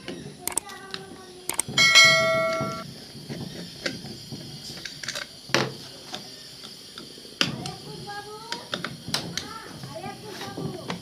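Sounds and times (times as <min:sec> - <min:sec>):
metal parts clicking and knocking: 0:01.5 - 0:02.8
metal clang: 0:01.7 - 0:02.8.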